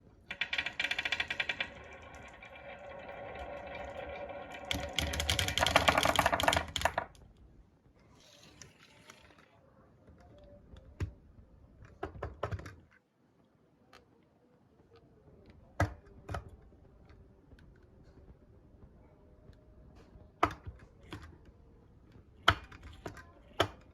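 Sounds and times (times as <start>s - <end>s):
marbles clattering down wooden track: 0.3s - 7.2s.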